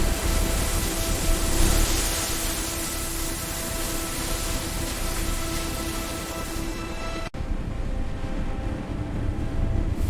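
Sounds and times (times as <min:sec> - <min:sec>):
low rumble: 0:07.3 - 0:10.0.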